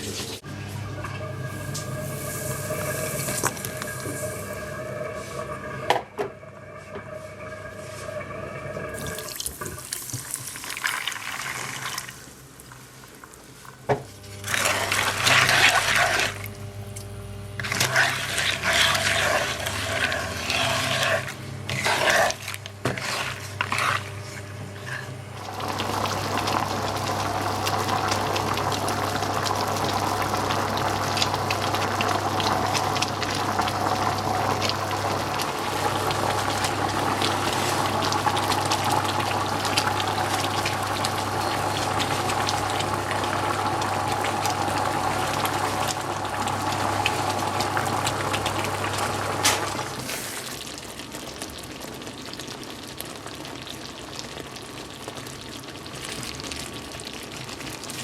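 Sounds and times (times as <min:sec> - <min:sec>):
sugar water bubbling in a pan: 0:17.6 - 0:58.0.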